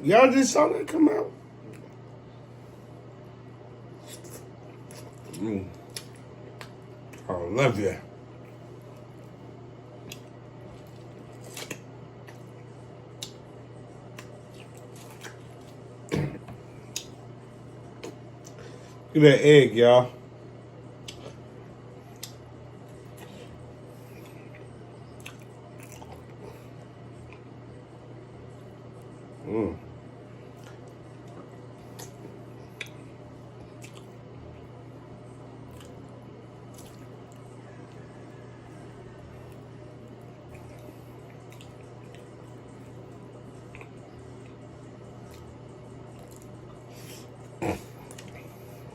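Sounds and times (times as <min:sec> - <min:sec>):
steady low hum: 0:00.0 - 0:48.9
wet squishing of food: 0:14.1 - 0:18.6, 0:30.4 - 0:34.8, 0:35.5 - 0:48.9.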